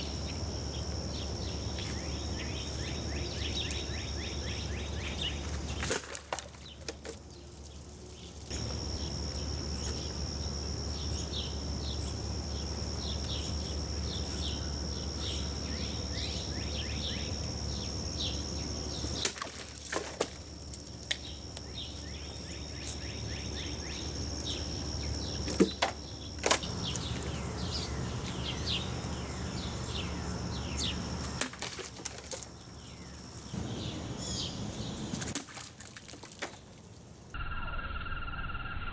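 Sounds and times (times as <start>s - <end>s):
birds chirping: 0.0s - 5.9s, 8.1s - 19.2s, 21.2s - 31.4s, 32.5s - 35.2s.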